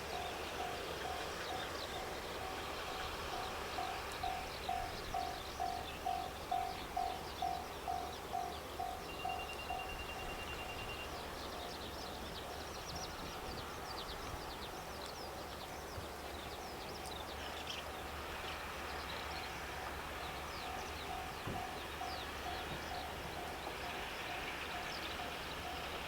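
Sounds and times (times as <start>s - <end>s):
level crossing warning bell: 3.3s - 11.3s, 20.6s - 26.0s.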